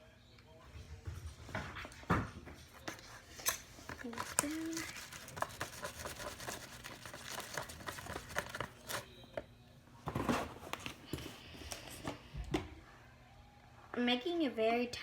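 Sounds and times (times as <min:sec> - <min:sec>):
spoon stirring slime in a bowl: 0:02.7 - 0:09.0.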